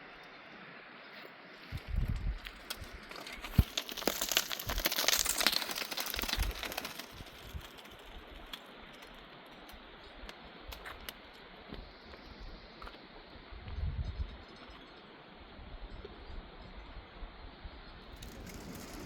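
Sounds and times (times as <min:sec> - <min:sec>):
dry twigs crackling and snapping: 0:01.7 - 0:11.3, 0:18.2 - 0:19.0.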